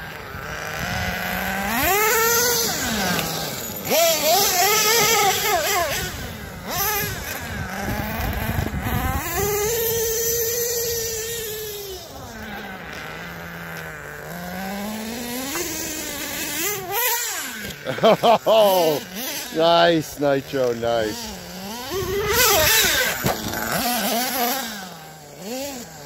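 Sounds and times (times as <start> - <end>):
small nitro engine revving: 0.0 - 26.0.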